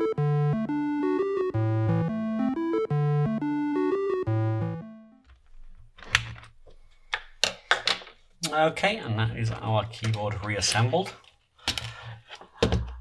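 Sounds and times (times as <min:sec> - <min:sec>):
synthesizer music: 0:00.0 - 0:05.3.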